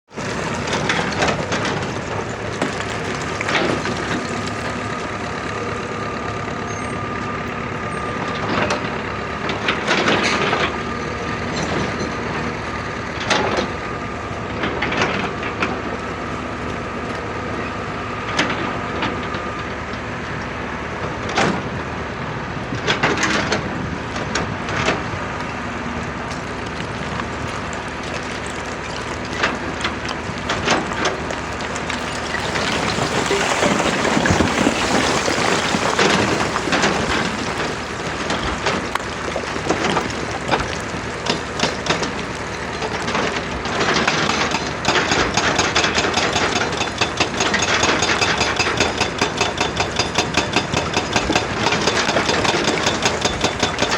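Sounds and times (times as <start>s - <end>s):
excavator engine running: 0.0s - 19.3s, 22.9s - 53.9s
rock knocking and clattering: 0.1s - 6.2s, 25.4s - 53.9s.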